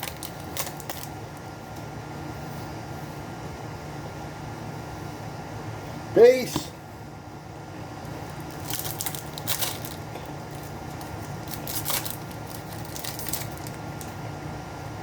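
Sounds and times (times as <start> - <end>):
steady low hum: 0.0 - 15.0
trading cards rustling: 8.3 - 14.2.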